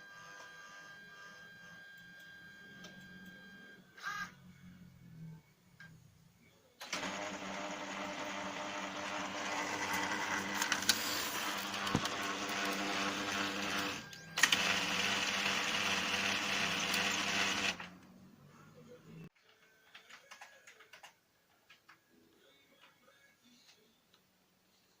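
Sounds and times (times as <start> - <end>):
printer mechanical grinding: 6.8 - 17.9.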